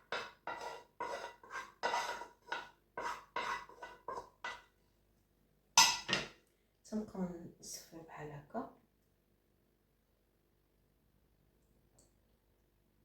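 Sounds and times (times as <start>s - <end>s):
scraping in a kitchen strainer: 0.0s - 4.6s.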